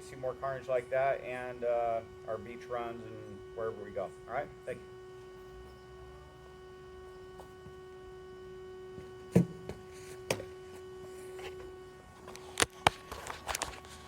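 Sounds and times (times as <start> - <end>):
electrical hum: 0.0 - 14.0.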